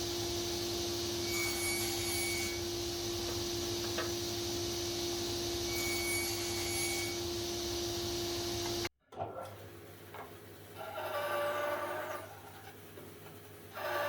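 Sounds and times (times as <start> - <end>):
high machine whine: 0.0 - 8.9
woodworking machine humming: 0.0 - 8.9, 13.6 - 14.0.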